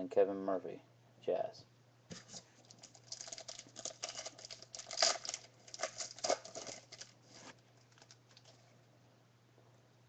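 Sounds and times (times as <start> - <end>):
trading cards rustling: 2.1 - 8.6.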